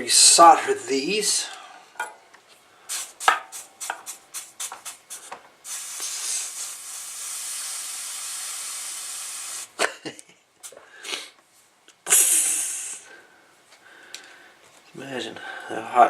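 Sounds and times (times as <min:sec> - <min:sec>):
steady hiss: 0:00.0 - 0:16.0
tools clicking and tapping: 0:02.0 - 0:02.2, 0:03.2 - 0:04.1.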